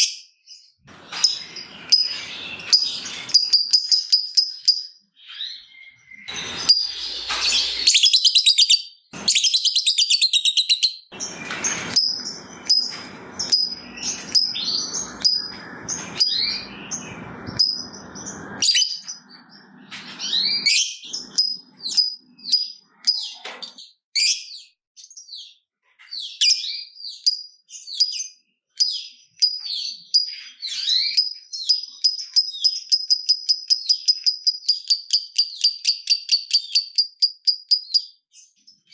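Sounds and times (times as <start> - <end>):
bird chirps and calls: 0.0 - 38.9
bird rattling chatter: 1.0 - 4.7, 11.2 - 18.5.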